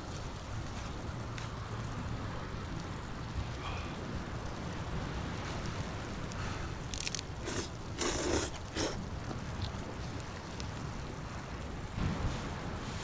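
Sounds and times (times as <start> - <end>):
person chewing crunchy food: 7.0 - 9.0.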